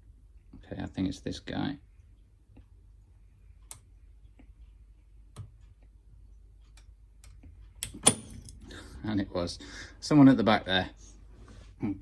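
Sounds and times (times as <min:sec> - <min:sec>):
lock pick clicking in padlock: 0:07.8 - 0:08.6.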